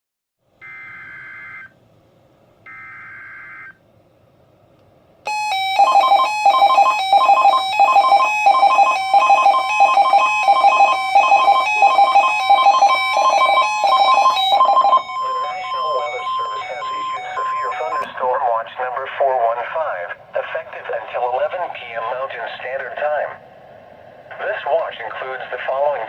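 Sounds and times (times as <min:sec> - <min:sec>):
electronic alert alarm beeping: 0:05.3 - 0:18.2
warbling digital tones: 0:05.3 - 0:18.2.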